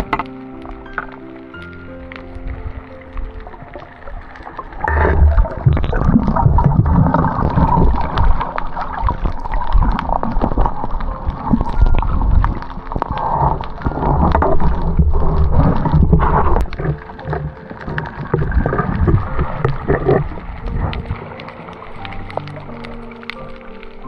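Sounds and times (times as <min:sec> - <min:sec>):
small clicks and knocks: 0:00.0 - 0:01.2
sea water sloshing and gurgling: 0:00.0 - 0:24.0
low rumble: 0:01.9 - 0:23.0.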